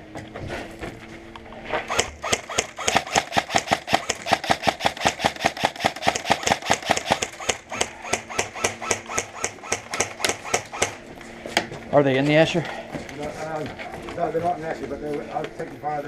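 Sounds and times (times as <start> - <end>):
airsoft gun rapid firing: 1.9 - 11.0.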